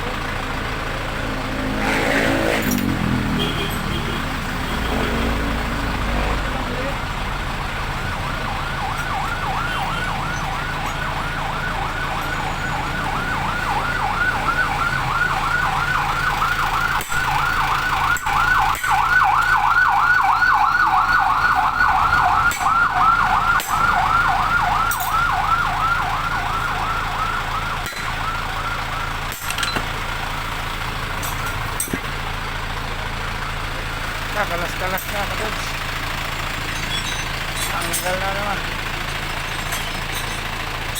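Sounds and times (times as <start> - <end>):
siren fast yelp: 7.6 - 29.6.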